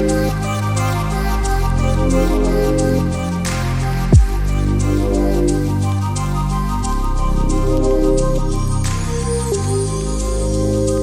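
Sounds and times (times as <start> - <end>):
soft new-age music: 0.0 - 11.0.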